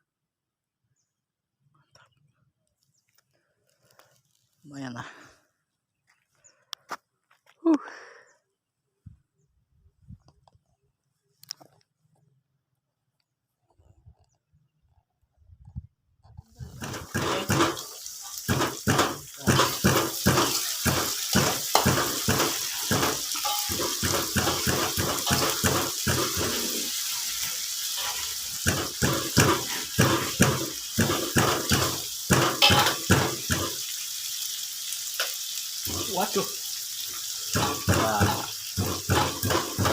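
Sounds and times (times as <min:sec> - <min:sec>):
tap water running into basin: 0:16.8 - 0:39.9.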